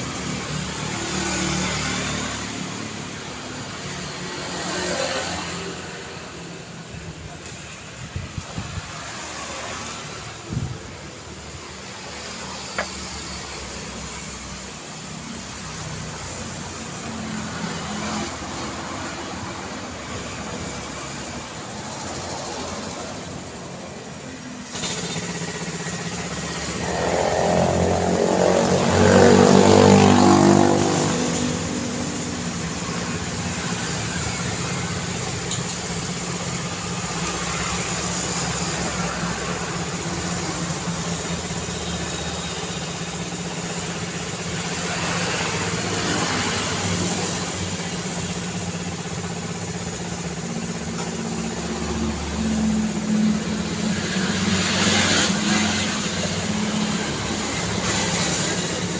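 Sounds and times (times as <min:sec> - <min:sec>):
engine hum: 0:00.0 - 0:58.9
vehicle passing: 0:26.5 - 0:34.5.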